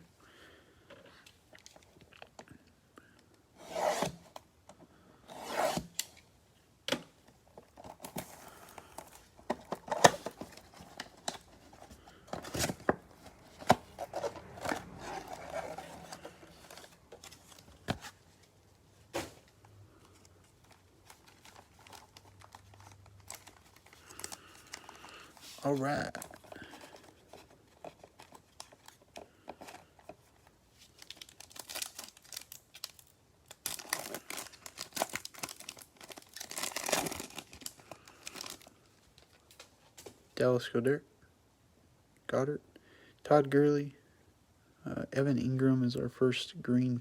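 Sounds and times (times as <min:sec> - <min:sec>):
wrappers rustling and crinkling: 0:19.4 - 0:39.7
packaging tearing: 0:31.0 - 0:38.7.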